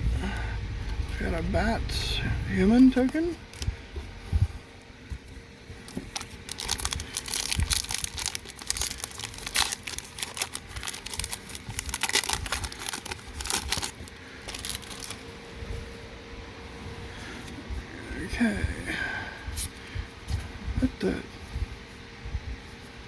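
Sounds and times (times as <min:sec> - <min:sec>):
foil wrapper crinkling: 0:02.7 - 0:03.8, 0:05.8 - 0:15.3.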